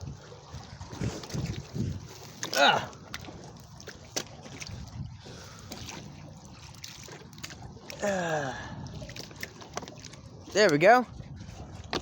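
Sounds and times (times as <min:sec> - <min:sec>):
water sloshing and lapping: 0:00.0 - 0:12.0.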